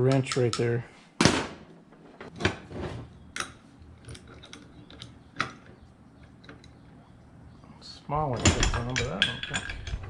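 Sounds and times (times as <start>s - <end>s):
metal tool clinks and knocks: 8.4s - 10.0s.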